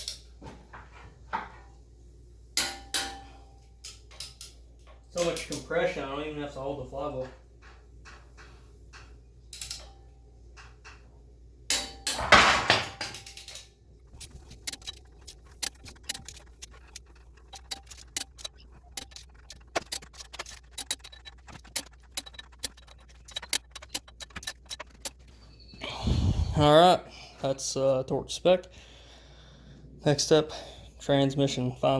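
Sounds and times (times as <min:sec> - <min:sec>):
metallic clatter: 0:11.7 - 0:25.7.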